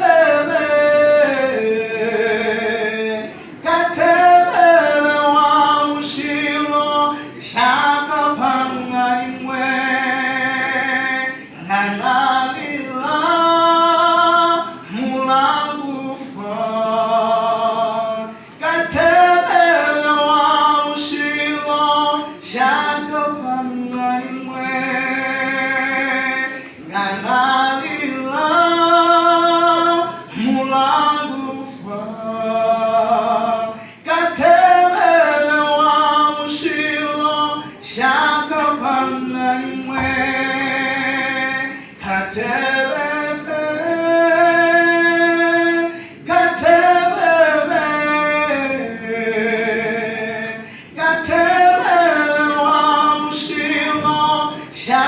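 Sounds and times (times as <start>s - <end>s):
person singing gospel song: 0.0s - 55.0s.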